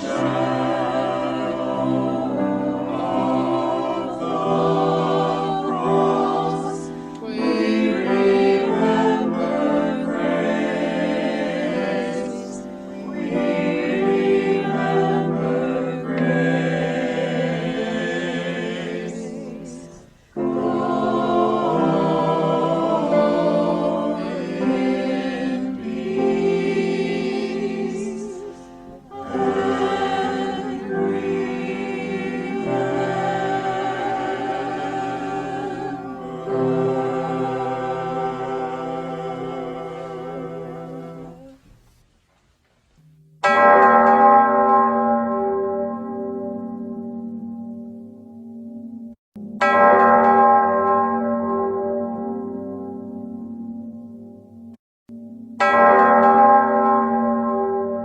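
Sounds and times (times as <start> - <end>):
choir singing: 0.0 - 41.7.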